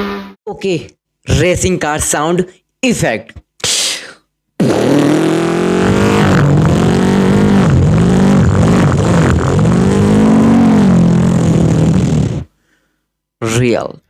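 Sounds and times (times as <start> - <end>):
racing car engine revving: 4.6 - 12.5.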